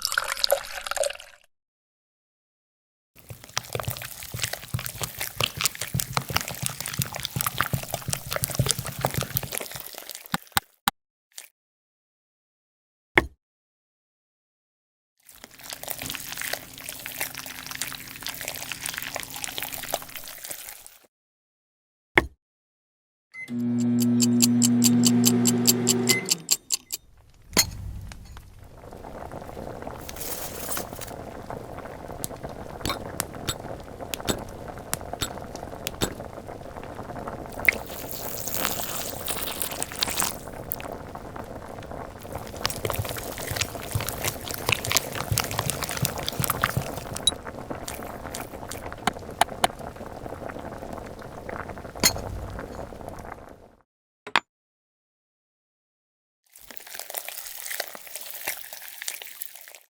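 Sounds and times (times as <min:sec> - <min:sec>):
liquid bubbling in a pan: 0:03.2 - 0:10.0, 0:15.4 - 0:20.8, 0:27.5 - 0:53.8, 0:56.7 - 0:59.9
loud pitched tone: 0:23.5 - 0:26.9
tiny utensils clinking glassware: 0:30.0 - 0:31.2.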